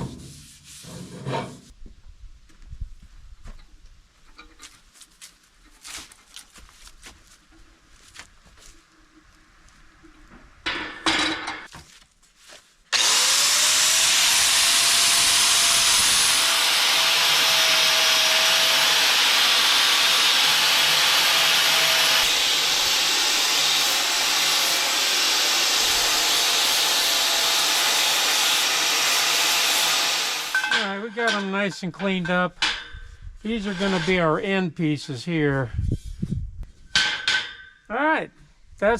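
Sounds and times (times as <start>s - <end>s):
electric grinder whine: 12.9s - 30.7s.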